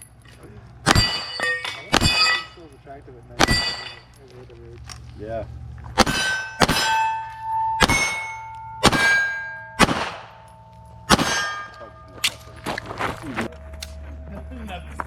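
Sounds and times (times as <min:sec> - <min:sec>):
pistol shots: 0:00.8 - 0:02.5, 0:03.4 - 0:03.9, 0:06.0 - 0:07.2, 0:07.8 - 0:10.4, 0:11.1 - 0:12.4
steel plate clanging: 0:00.9 - 0:02.7, 0:03.4 - 0:04.2, 0:06.0 - 0:12.7.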